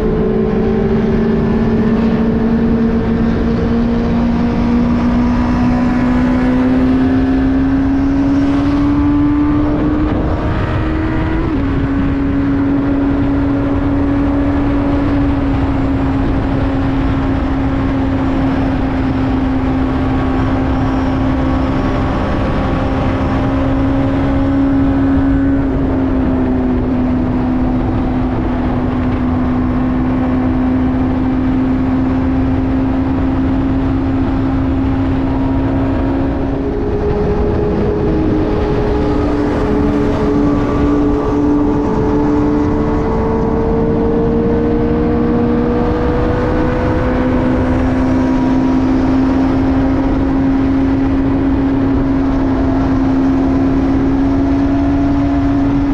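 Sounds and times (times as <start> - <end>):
higher rising engine tone: 0.0 - 55.9
motorcycle engine at high revs: 0.0 - 55.9
rushing noise: 32.4 - 47.9.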